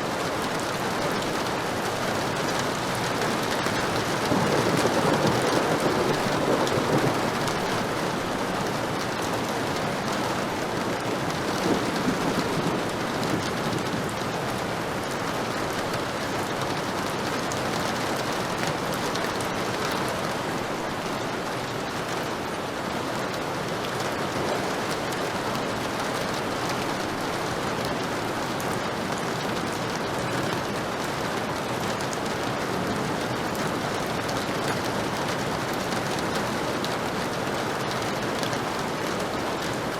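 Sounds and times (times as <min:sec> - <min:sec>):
heavy rain falling: 0:00.0 - 0:39.9
low thunder rumbles: 0:03.4 - 0:08.8, 0:10.4 - 0:14.2.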